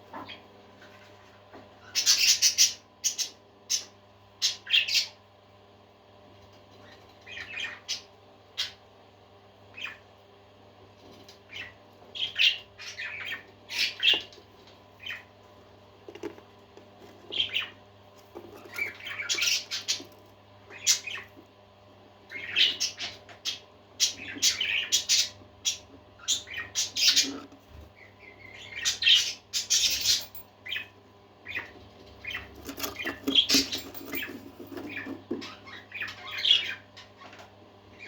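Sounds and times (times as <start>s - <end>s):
parakeets chirping and squawking: 1.8s - 5.2s, 6.8s - 8.8s, 9.7s - 10.0s, 11.1s - 15.3s, 17.0s - 21.4s, 22.3s - 38.0s.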